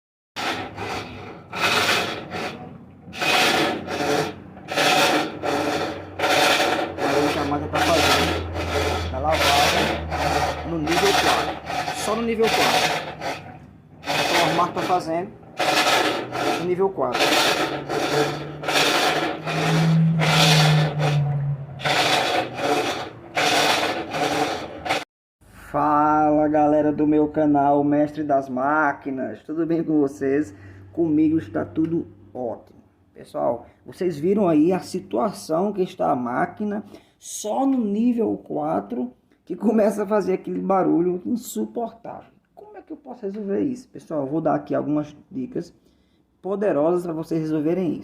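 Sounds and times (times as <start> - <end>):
washing machine rasping rubbing noise: 0.4 - 25.1
low motor hum: 2.1 - 16.6, 17.2 - 25.0.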